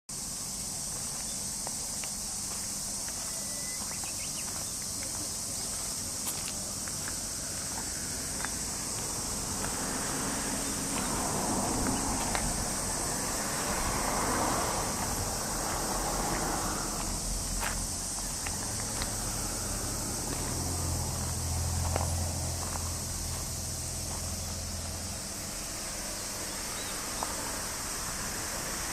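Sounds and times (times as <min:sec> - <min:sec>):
insects chirring: 0:00.1 - 0:28.9
swell of noise: 0:07.2 - 0:22.6.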